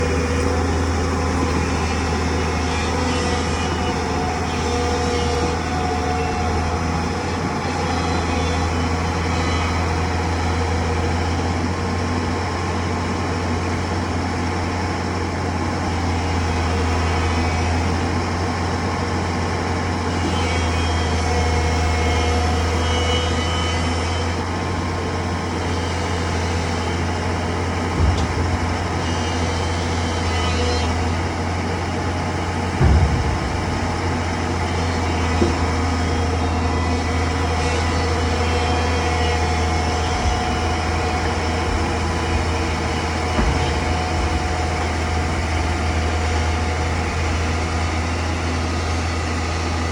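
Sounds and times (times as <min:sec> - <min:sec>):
excavator diesel engine running: 0:00.0 - 0:49.9
sharp knock: 0:32.7 - 0:37.3.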